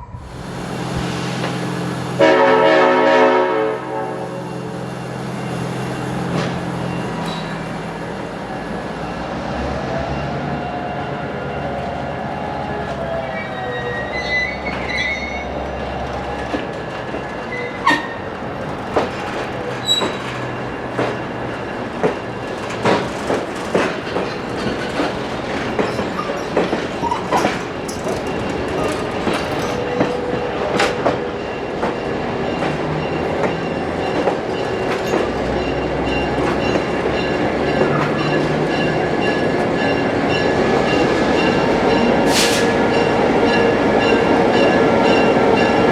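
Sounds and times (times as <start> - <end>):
train rumbling past: 0.0 - 45.9
wheel squeal: 13.5 - 15.6, 19.0 - 20.5, 22.8 - 30.4
wheels clicking over rail joints: 14.2 - 45.9.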